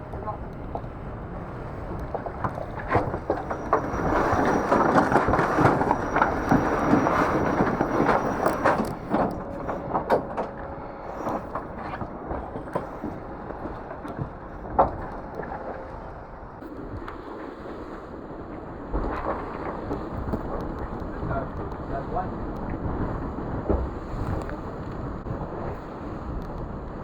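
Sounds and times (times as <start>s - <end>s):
water and wind rushing along hull: 0.0s - 27.0s
sharp knocks and bangs from boat: 1.8s - 16.2s, 22.7s - 25.3s.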